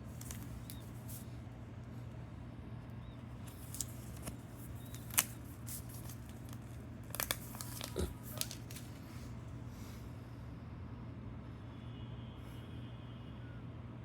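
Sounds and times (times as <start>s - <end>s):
packaging crinkling and tearing: 0.0s - 1.2s, 3.4s - 9.2s.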